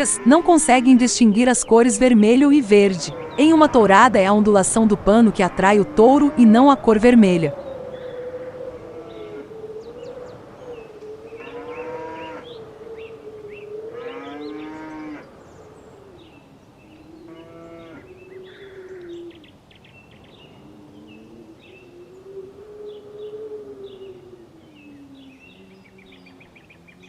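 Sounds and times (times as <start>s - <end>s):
cattle mooing: 0.0s - 1.2s, 2.1s - 7.5s, 11.5s - 12.5s.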